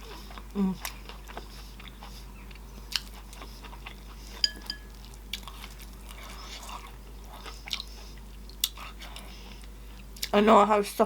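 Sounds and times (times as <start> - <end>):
metal utensil clinking dish: 4.4 - 5.0.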